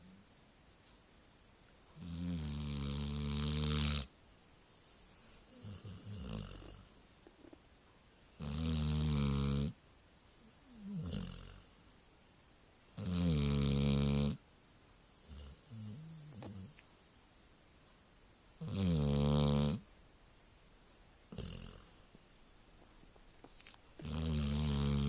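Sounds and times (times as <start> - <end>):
dog snoring: 2.0 - 7.6, 8.4 - 11.9, 13.0 - 14.4, 15.1 - 18.0, 18.6 - 19.9, 21.3 - 22.2, 24.0 - 25.0.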